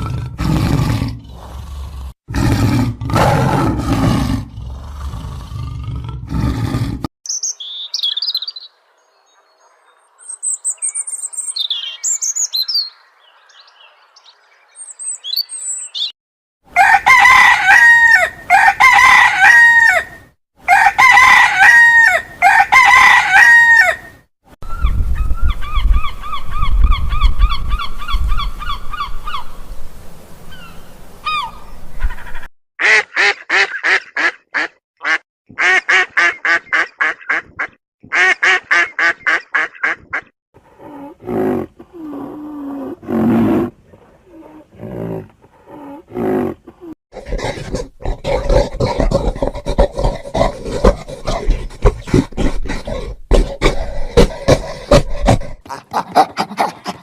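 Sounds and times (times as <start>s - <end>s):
rooster crowing: 16.7s - 24.1s.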